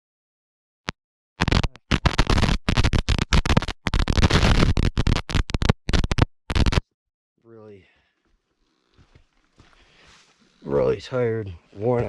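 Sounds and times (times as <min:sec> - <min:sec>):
scratching and rubbing on microphone: 0:01.4 - 0:06.8, 0:08.4 - 0:12.0.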